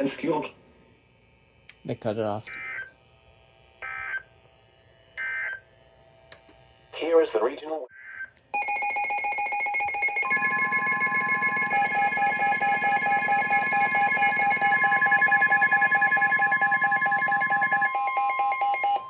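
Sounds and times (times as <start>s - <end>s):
loud alert tones: 8.6s - 19.0s.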